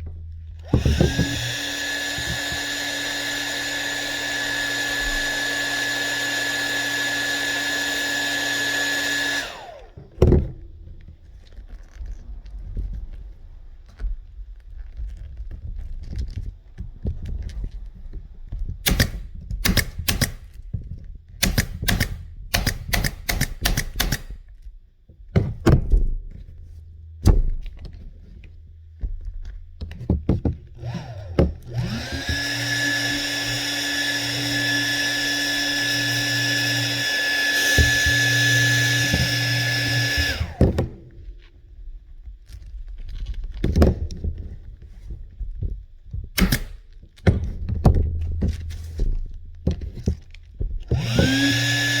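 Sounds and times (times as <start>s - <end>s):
small motor running: 0.6s - 10.1s, 30.7s - 41.0s, 50.9s - 52.0s
pneumatic staple gun firing: 0.7s - 10.0s, 18.8s - 20.5s, 21.4s - 24.4s, 30.8s - 41.1s, 46.4s - 46.9s, 50.9s - 52.0s.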